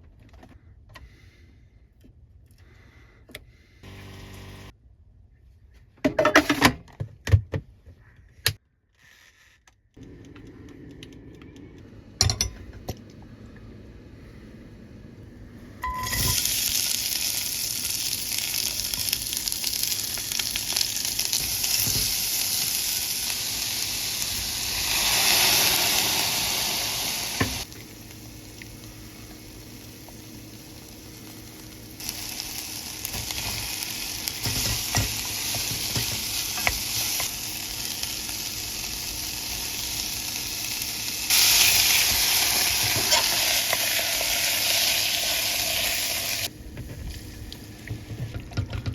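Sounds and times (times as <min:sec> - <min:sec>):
food sizzling in frying pan: 0:16.0 - 0:46.5.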